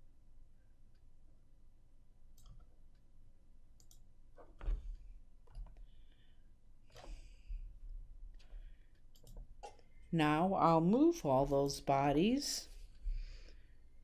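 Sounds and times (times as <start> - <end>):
computer mouse clicks: 2.3 - 3.1, 3.8 - 4.8, 8.3 - 9.8.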